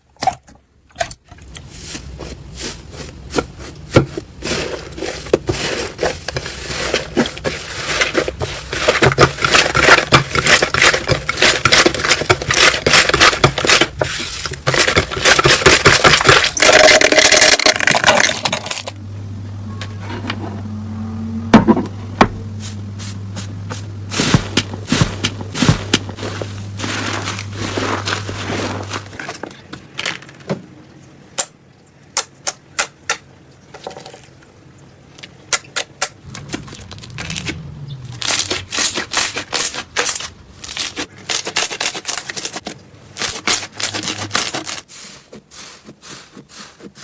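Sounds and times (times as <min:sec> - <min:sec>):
steady low hum: 0:01.6 - 0:29.9, 0:36.2 - 0:41.2.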